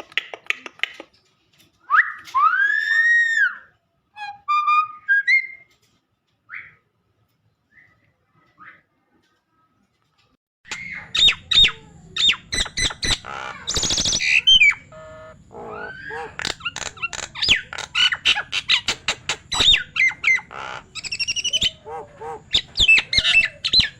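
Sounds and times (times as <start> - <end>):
myna whistles clicks and squawks: 1.8 - 5.8, 10.7 - 23.9.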